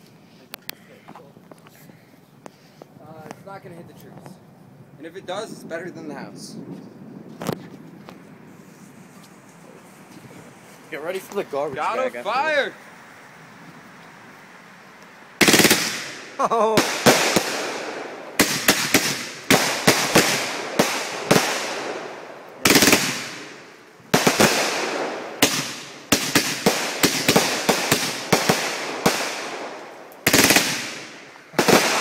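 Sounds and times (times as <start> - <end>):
firework crackling: 5.0 - 32.0
firework cake firing: 15.3 - 32.0.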